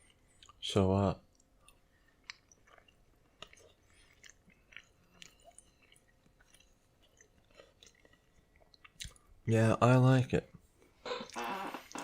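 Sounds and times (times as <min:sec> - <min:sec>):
faint chewing: 0:01.2 - 0:09.3.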